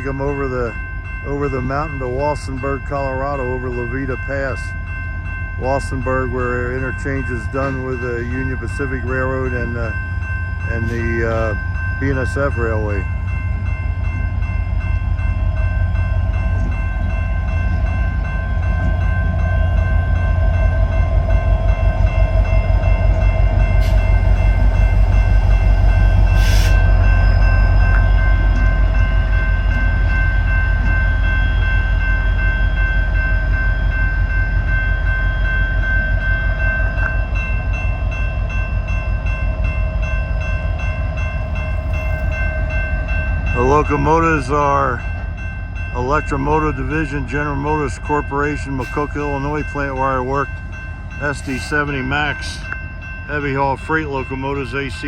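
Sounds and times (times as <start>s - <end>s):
locomotive diesel engines throbbing: 0.0s - 55.0s.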